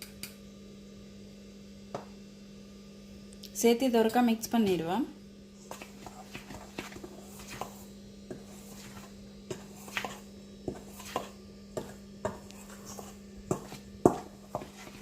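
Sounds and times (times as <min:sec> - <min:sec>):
utensil scraping a bowl: 0:05.6 - 0:15.0.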